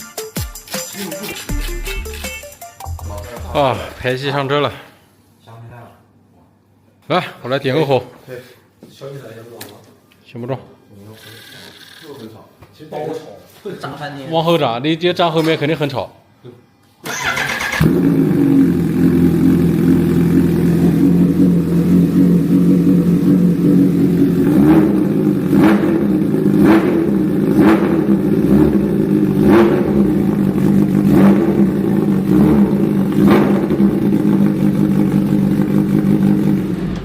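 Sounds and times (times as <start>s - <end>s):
exhaust cracks: 17.8s - 37.0s
loud motorcycle engine running: 17.8s - 37.0s.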